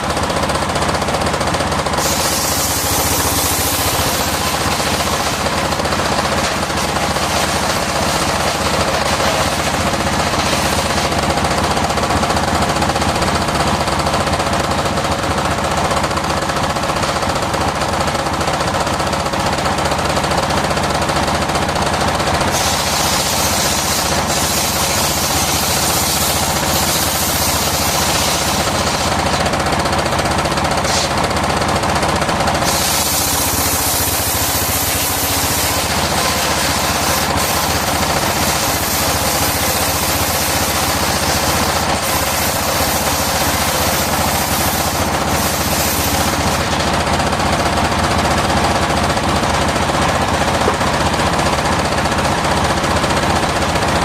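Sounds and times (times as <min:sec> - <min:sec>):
circular saw running: 0:00.0 - 0:54.0
harsh hissing: 0:02.0 - 0:11.1.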